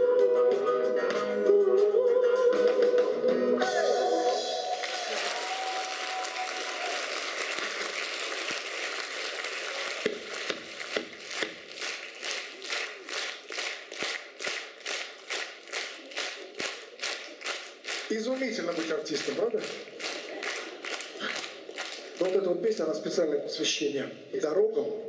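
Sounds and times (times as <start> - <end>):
rhythmic clapping in unison: 4.2 - 22.5
audience applauding: 4.2 - 22.6.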